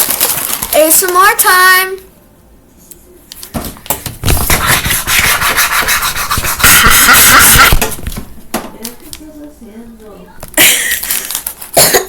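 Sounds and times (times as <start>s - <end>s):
rubbing and scratching on microphone: 4.2s - 8.2s.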